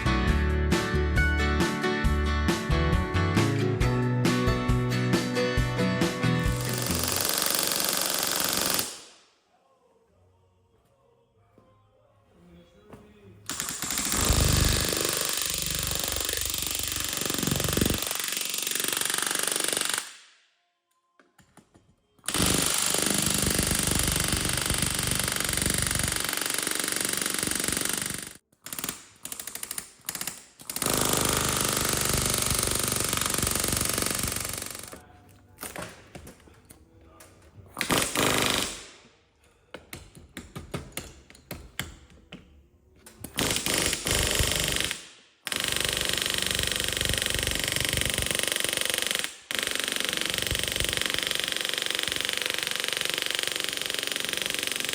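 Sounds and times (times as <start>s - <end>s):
pneumatic air tool bursts: 6.6s - 9.1s, 13.5s - 20.2s, 22.2s - 35.0s, 37.8s - 39.0s, 43.2s - 54.9s.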